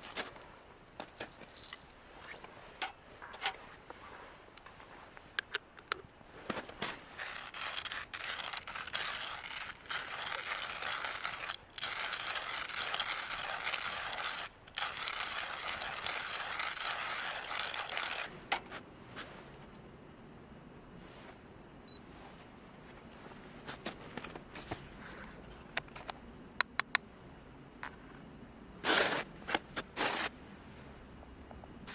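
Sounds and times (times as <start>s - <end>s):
coffee grinder grinding beans: 7.1s - 18.3s.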